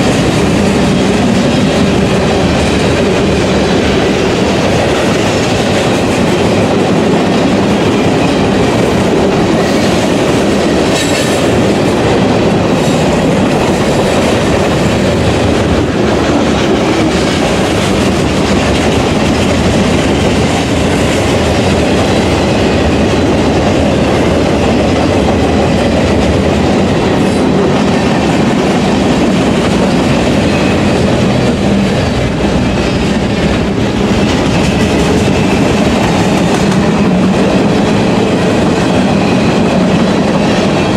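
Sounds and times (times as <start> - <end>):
freight train passing: 0.0 - 40.9.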